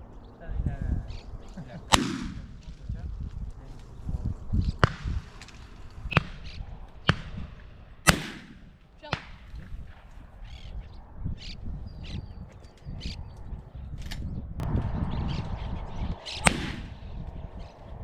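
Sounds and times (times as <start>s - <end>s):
shotgun shots: 1.9s - 2.8s, 4.8s - 9.6s, 16.4s - 17.0s.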